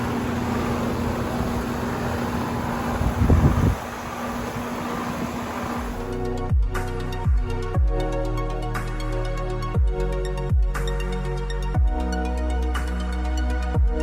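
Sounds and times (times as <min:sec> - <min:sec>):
compressor hum: 0:00.0 - 0:07.6
air conditioner fan rush: 0:00.0 - 0:10.5
electronic music: 0:05.9 - 0:14.0.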